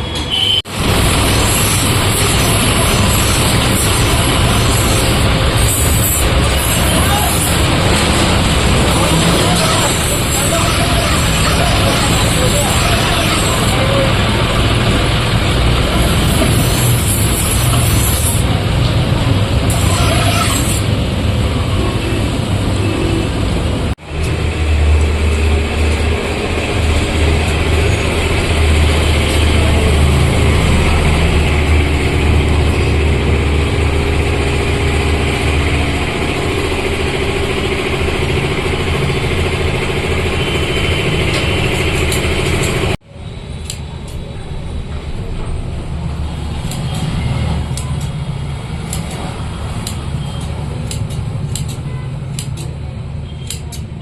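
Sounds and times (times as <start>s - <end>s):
sharpening machine grinding: 0.8s - 14.9s, 15.9s - 18.5s, 19.7s - 21.0s
scattered clicks: 48.9s - 52.8s, 53.4s - 54.0s.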